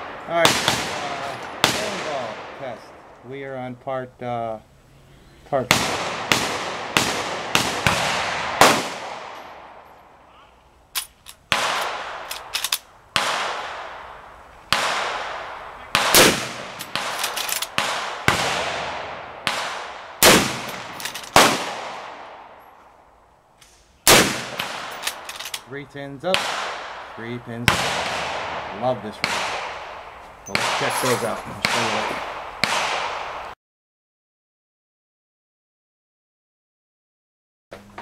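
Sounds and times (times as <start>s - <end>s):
gunshots with long echo: 0.0s - 3.3s, 5.6s - 9.9s, 11.5s - 23.1s, 24.0s - 25.3s, 26.2s - 33.6s.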